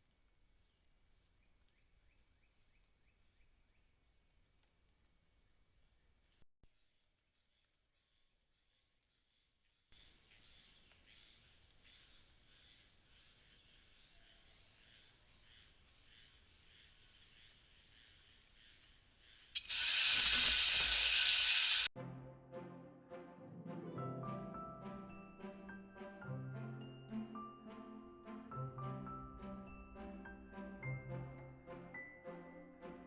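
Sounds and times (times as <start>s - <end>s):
crickets trilling: 0.0s - 21.9s
pulsing insect chirping: 7.0s - 21.9s
loud hiss: 19.6s - 21.9s.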